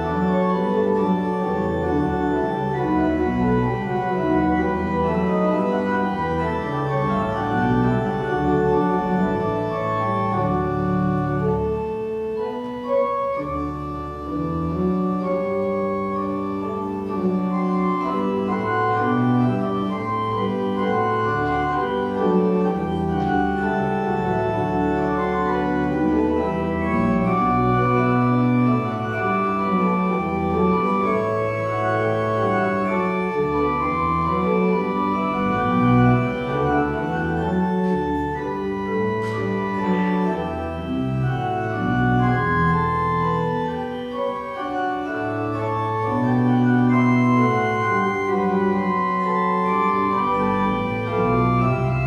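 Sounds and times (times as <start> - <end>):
organ chords: 0.0 - 52.0.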